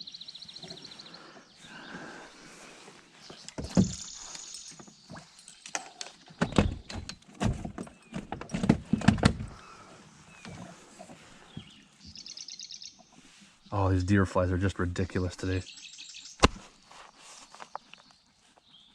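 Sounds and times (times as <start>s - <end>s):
knocks and thumps on a boat: 3.6s - 4.1s, 6.4s - 9.6s.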